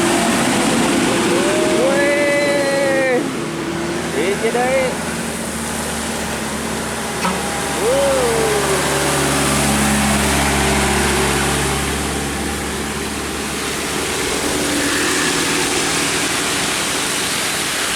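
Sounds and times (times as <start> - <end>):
bus engine running: 0.0 - 17.9.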